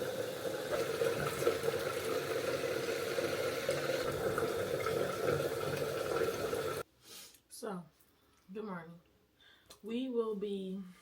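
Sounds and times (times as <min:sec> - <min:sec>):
running water rushing: 0:00.0 - 0:06.8.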